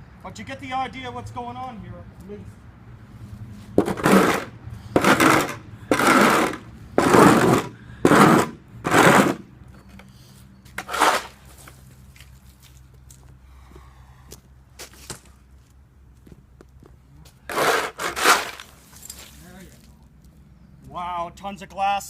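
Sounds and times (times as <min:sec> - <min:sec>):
shovel scraping concrete: 0:03.8 - 0:09.5, 0:10.8 - 0:11.8, 0:17.5 - 0:19.5.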